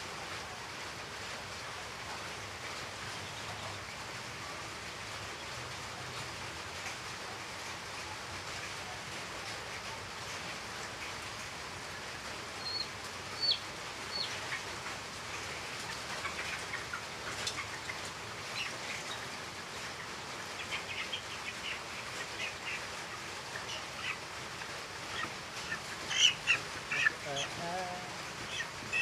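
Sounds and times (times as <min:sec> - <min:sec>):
steady hiss: 0:00.0 - 0:29.0
chicks peeping: 0:12.6 - 0:29.0.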